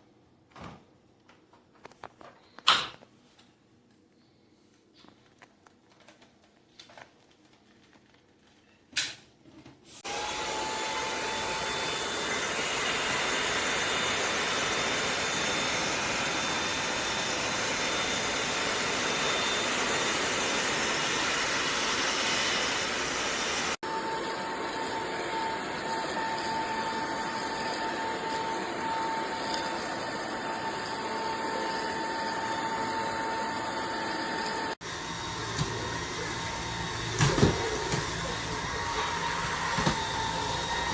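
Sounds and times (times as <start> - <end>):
vacuum cleaner running: 9.9 - 40.9.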